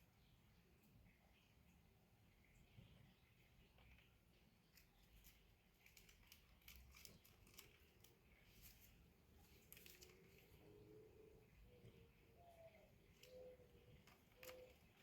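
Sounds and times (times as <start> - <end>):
faint clicks and ticks: 3.6 - 10.7, 11.8 - 15.0.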